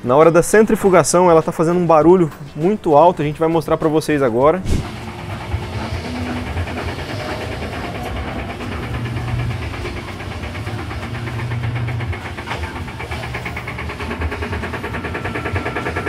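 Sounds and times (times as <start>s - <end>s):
washing machine spin knocking: 4.2s - 16.0s.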